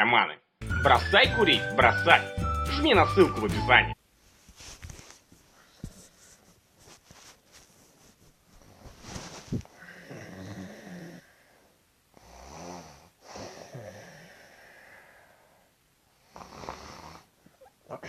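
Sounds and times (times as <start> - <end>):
person snoring: 9.8 - 11.4, 12.2 - 15.4.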